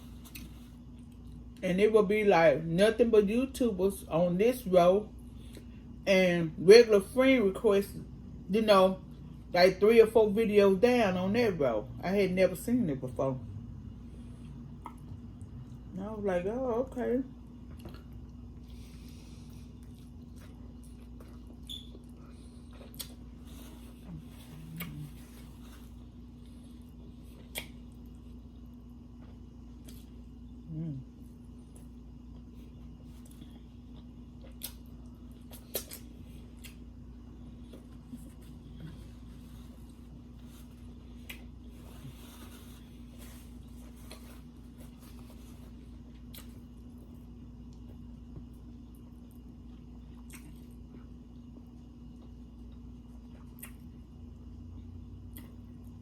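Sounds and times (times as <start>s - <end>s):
low electrical hum: 0.0s - 56.0s
wet chewing sounds: 17.5s - 30.2s, 31.6s - 54.1s
wet mouth clicks from chewing: 50.2s - 50.8s, 53.4s - 53.9s.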